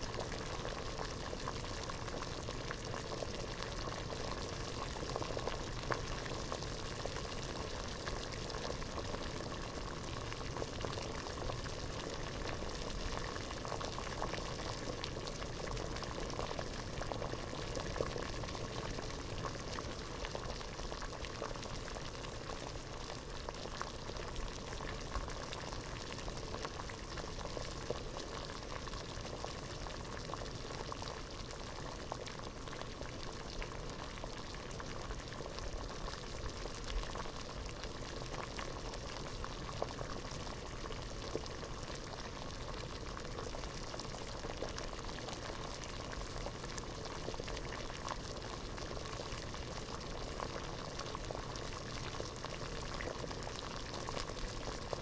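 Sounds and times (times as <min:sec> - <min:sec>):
water boiling in a pot: 0:00.0 - 0:55.0.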